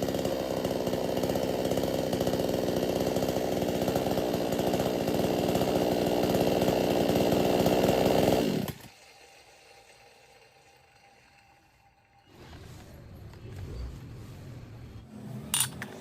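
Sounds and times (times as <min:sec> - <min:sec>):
chainsaw engine running: 0:00.0 - 0:08.9.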